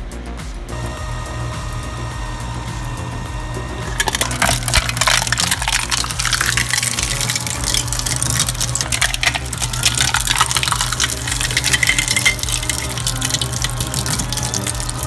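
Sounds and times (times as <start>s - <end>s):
crushing machine humming: 0.7s - 15.0s
material rattling and crackling: 4.0s - 15.0s.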